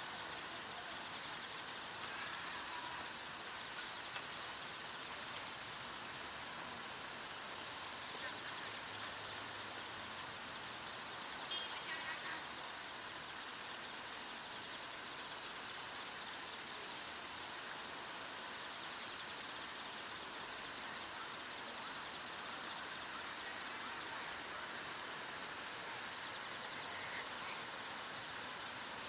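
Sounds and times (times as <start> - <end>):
outdoor background hiss: 0.0 - 29.0
bird chirps: 11.4 - 11.9.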